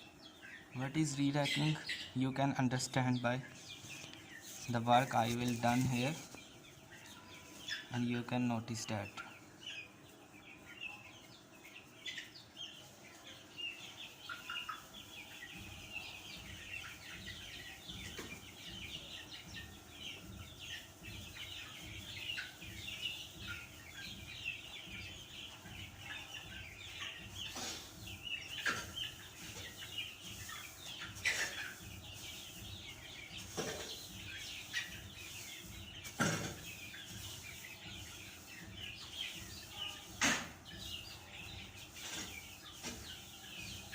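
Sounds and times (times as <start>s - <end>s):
chickens clucking and cheeping: 0.0s - 43.9s
rake scraping litter: 4.0s - 6.3s.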